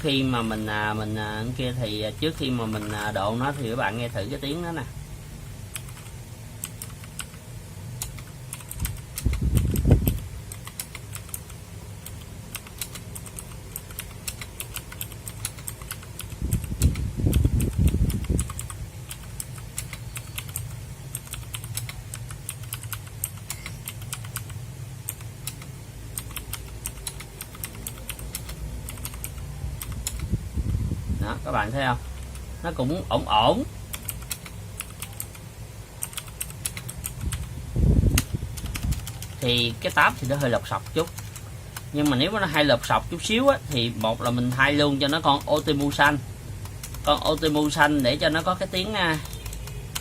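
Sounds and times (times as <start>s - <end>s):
low thudding keystrokes: 8.0s - 30.3s, 36.0s - 37.5s, 38.1s - 42.2s
mechanical keyboard key clicks: 8.0s - 30.3s, 33.9s - 35.4s, 36.0s - 37.5s, 38.1s - 42.2s, 49.1s - 50.0s.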